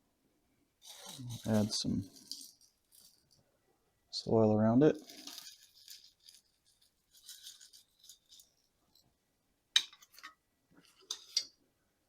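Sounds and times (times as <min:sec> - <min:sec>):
soil rattling and trickling: 0:00.8 - 0:03.5, 0:04.9 - 0:09.0.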